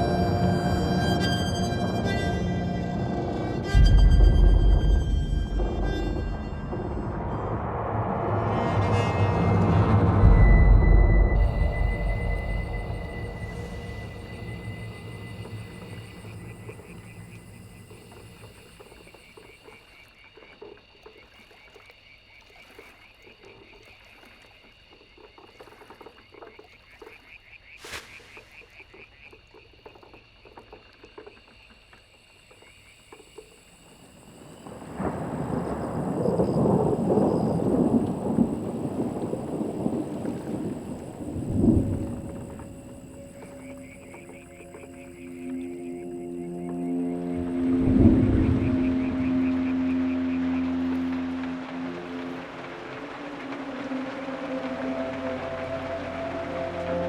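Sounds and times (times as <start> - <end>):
high-pitched pulsing chorus: 0.0 - 19.0, 39.2 - 57.0
loud rumble: 1.6 - 18.6, 47.2 - 57.0.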